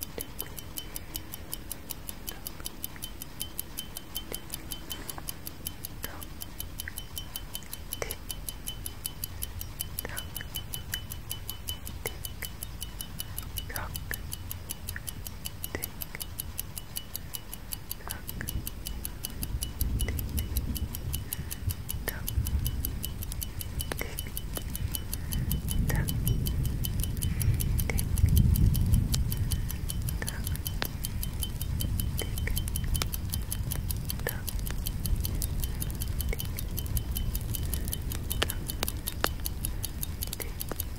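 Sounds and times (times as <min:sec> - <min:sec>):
clock ticking: 0:00.0 - 0:40.9.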